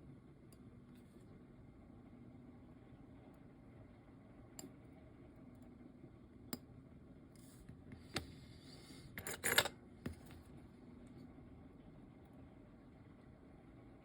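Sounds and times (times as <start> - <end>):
metal tools clicking on watch parts: 9.2 - 9.7.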